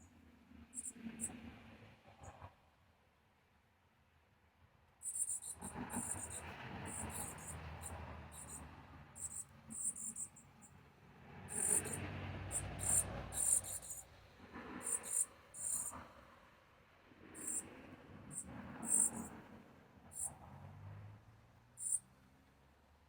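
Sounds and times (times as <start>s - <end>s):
high-pitched chirps: 9.2s - 10.4s, 11.5s - 14.0s, 14.8s - 15.9s, 17.4s - 17.6s, 18.8s - 19.3s.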